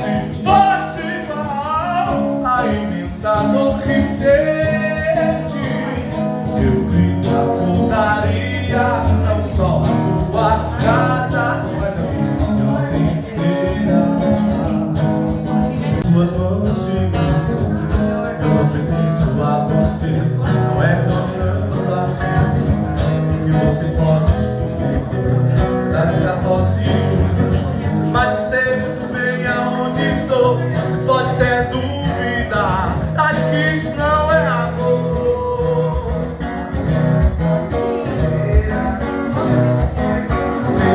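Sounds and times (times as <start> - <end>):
person singing: 0.0 - 14.9.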